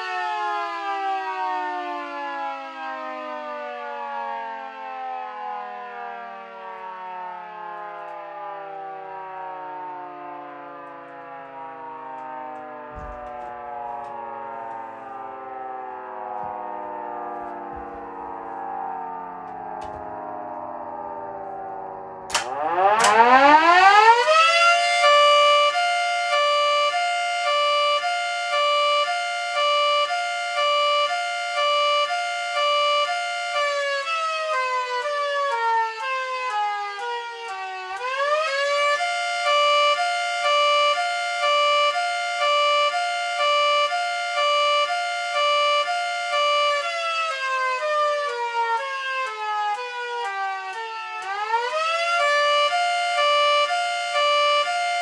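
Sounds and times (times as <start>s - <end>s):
rotating siren winding: 22.3s - 55.0s.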